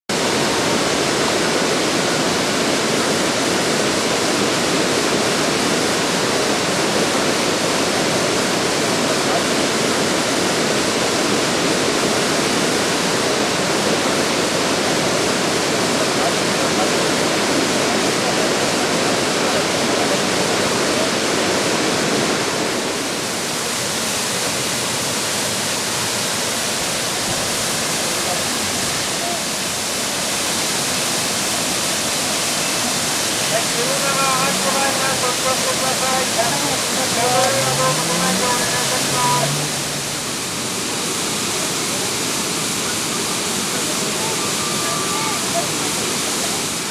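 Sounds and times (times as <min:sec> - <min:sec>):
waterfall rushing and splashing: 0:00.0 - 0:46.9.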